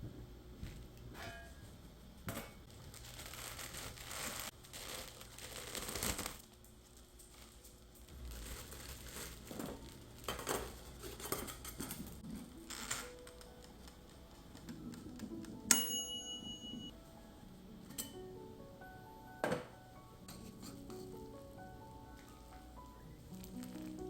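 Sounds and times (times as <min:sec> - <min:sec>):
packaging crinkling: 0:02.7 - 0:11.6, 0:23.3 - 0:24.0.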